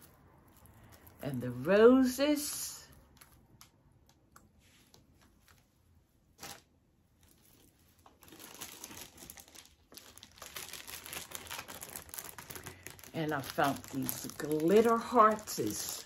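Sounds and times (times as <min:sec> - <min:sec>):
plastic packaging crinkling: 0:00.0 - 0:01.4, 0:06.4 - 0:16.0.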